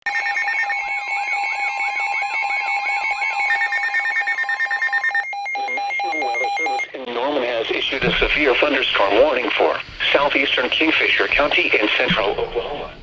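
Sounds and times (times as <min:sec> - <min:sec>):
warbling siren-like alarm: 0:00.1 - 0:06.8
fast alarm beeping: 0:00.1 - 0:07.0
steady alarm tones: 0:00.1 - 0:13.0.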